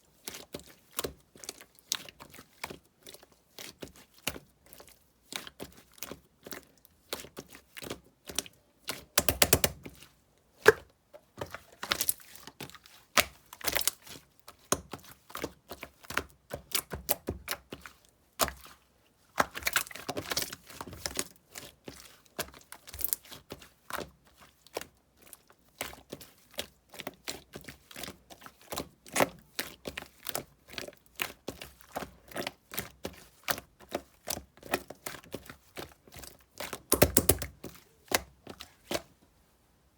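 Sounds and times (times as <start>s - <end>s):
slime squished by hand: 8.3s - 12.4s, 33.5s - 39.1s.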